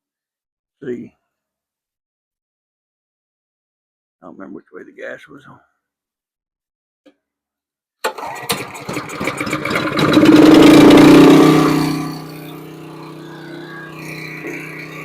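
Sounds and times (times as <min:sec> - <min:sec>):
pressure washer engine running: 0:08.1 - 0:15.0.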